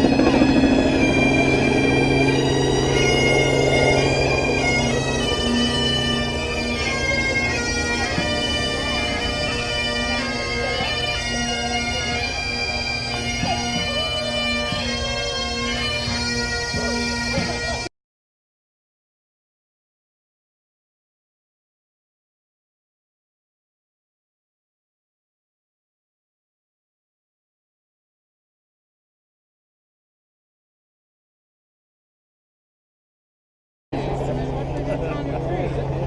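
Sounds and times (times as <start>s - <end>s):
bagpipe drones: 0.0s - 17.9s
bagpipes playing a tune: 0.0s - 17.9s.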